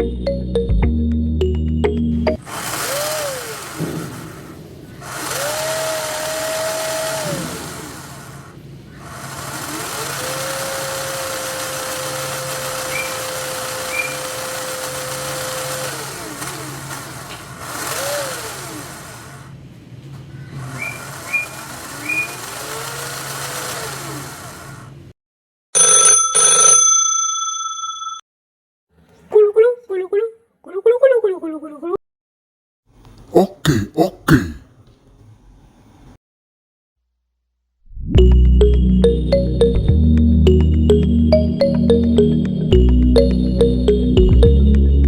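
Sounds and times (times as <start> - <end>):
small electric motors whining: 2.4 - 19.6, 20.5 - 25.1.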